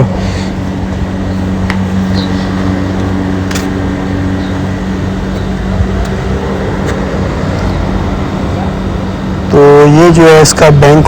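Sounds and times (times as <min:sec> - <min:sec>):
engine idling with misfire: 0:00.0 - 0:11.0.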